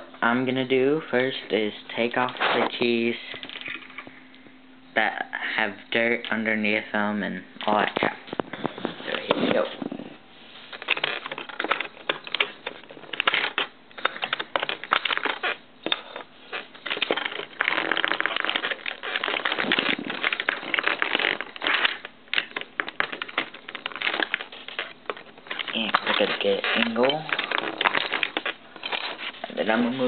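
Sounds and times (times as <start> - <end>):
pencil scraping keyboard: 10.7 - 30.0.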